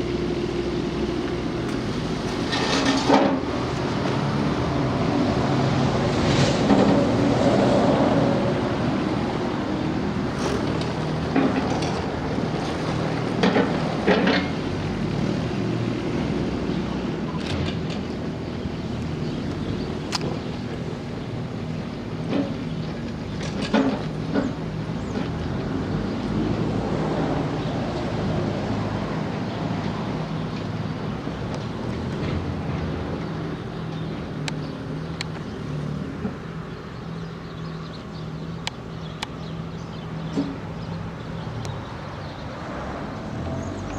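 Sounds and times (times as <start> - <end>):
mini excavator running: 0.0 - 27.2.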